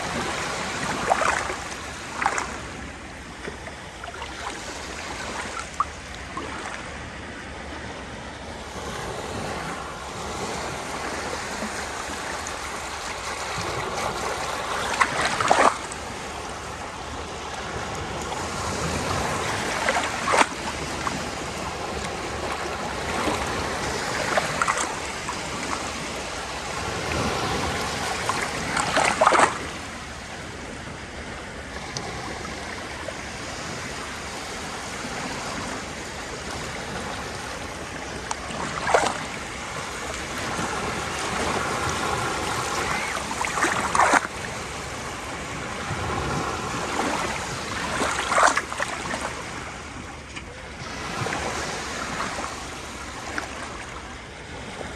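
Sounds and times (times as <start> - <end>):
breaking waves splashing: 0.0 - 6.8, 8.7 - 30.8, 31.8 - 54.0
sea surf waves: 0.0 - 54.9.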